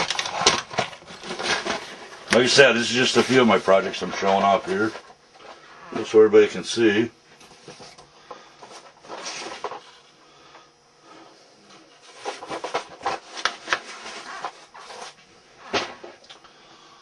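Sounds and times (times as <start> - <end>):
small objects rustling and clicking: 0.0 - 5.6, 12.0 - 16.4.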